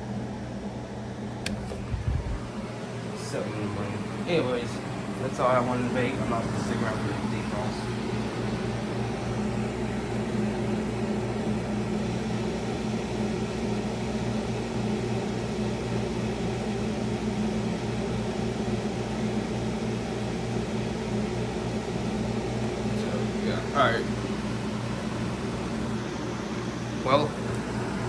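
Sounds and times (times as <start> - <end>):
heat pump humming: 0.0 - 28.0
air rushing: 1.6 - 2.5.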